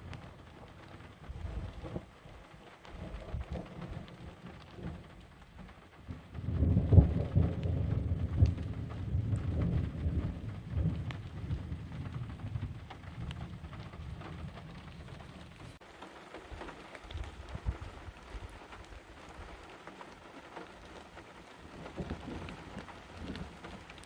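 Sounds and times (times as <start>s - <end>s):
thunder rumbling: 0.0s - 15.8s, 16.5s - 24.0s
rain falling: 0.0s - 24.0s.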